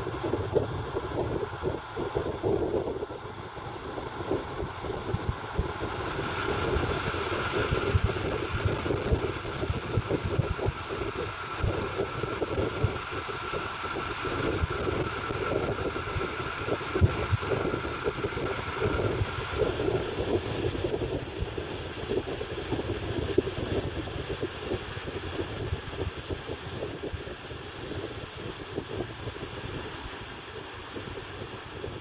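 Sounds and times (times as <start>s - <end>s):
wind on microphone: 14.2s - 32.0s
train rumbling: 17.8s - 32.0s
faint high whine: 19.2s - 32.0s.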